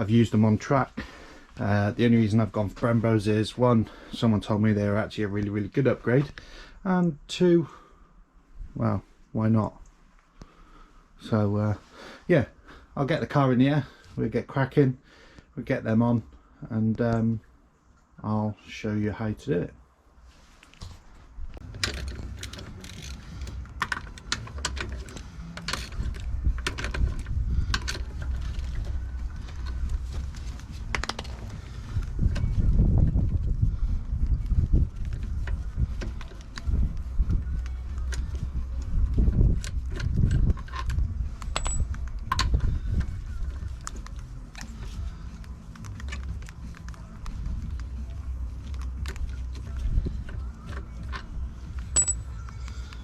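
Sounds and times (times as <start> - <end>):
steady low rumble: 21.0 - 53.0
mechanical clicks and clanks: 21.6 - 29.8.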